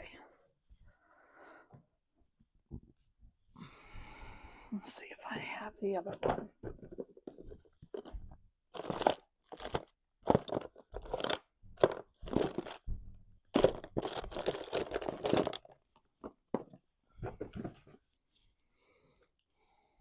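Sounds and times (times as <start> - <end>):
crinkling rustling of craft supplies: 5.9 - 12.9, 13.6 - 18.0.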